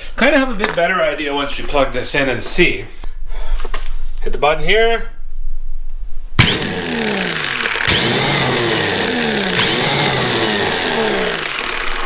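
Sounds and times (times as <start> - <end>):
electric starter motor whirring: 6.4 - 12.0.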